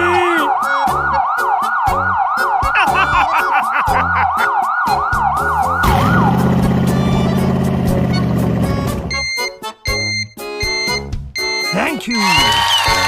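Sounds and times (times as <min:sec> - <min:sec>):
wailing emergency siren: 0:00.0 - 0:07.4, 0:12.1 - 0:13.0
rhythmic beat: 0:02.5 - 0:13.0.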